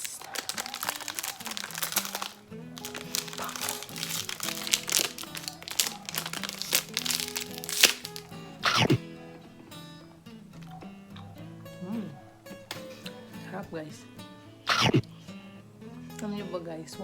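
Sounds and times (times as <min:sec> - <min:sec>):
plastic wrapper crinkling: 0:00.0 - 0:08.3
background music: 0:00.0 - 0:17.0.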